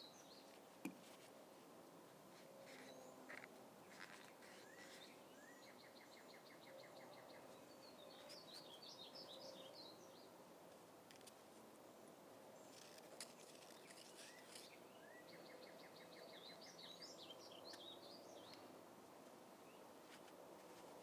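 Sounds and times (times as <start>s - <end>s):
faint birdsong: 0.0s - 1.4s, 2.1s - 21.0s.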